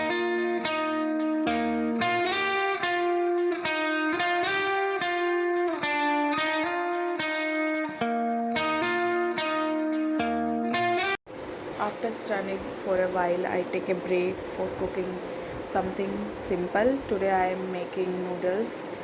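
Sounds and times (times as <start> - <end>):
electric guitar music: 0.0 - 11.2.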